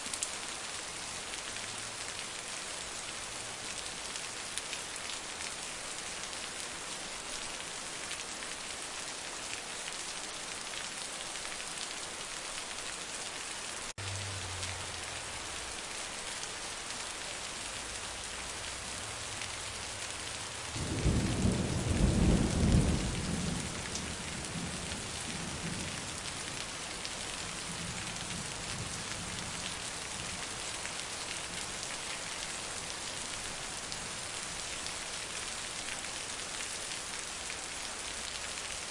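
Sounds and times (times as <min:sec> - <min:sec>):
heavy rain: 0:00.0 - 0:38.9
thunder rumble: 0:20.7 - 0:25.9.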